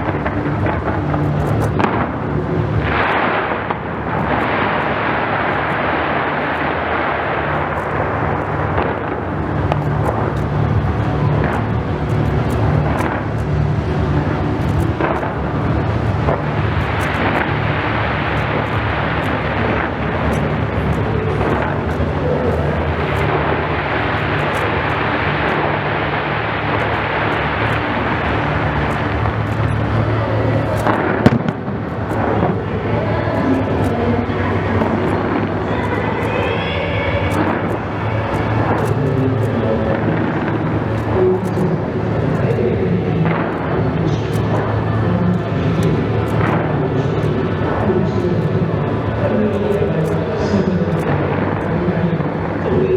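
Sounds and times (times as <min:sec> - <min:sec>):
fireworks crackling and popping: 0:00.0 - 0:52.8
fireworks booming: 0:30.8 - 0:32.5.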